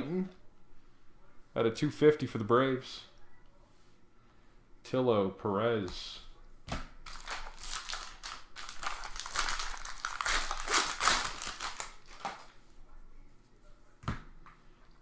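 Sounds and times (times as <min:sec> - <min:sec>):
wrapper crinkling and tearing: 0:07.0 - 0:12.6.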